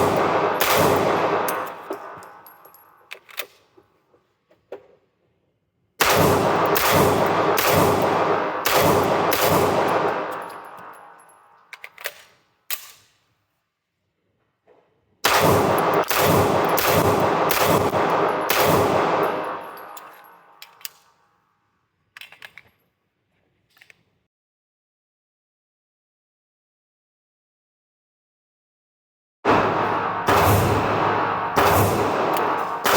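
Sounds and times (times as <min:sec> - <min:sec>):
pistol shots echoing: 0:00.0 - 0:02.6, 0:06.0 - 0:11.2, 0:15.2 - 0:20.4, 0:29.5 - 0:32.9
light metallic clinks: 0:19.2 - 0:20.9.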